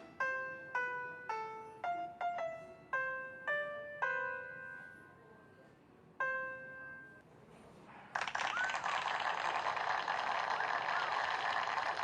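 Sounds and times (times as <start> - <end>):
slow piano melody: 0.0 - 7.3.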